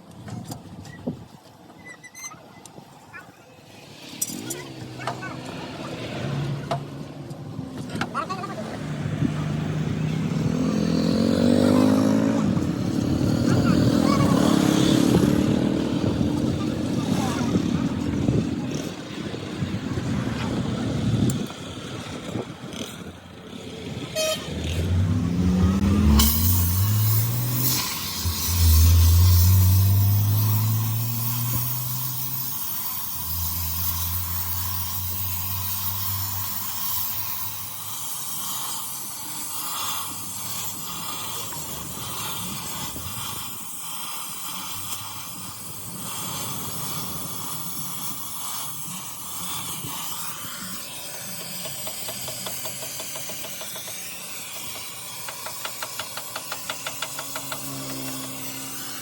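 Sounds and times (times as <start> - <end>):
vehicle engine running: 4.3 - 38.6, 51.9 - 59.0
steady hiss: 26.0 - 59.0
rapid ticks: 51.4 - 58.4.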